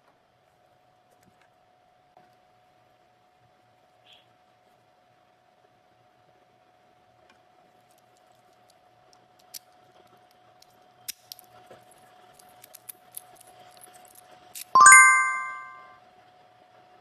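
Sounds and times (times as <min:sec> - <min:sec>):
loud bright ding: 0:14.8 - 0:15.8.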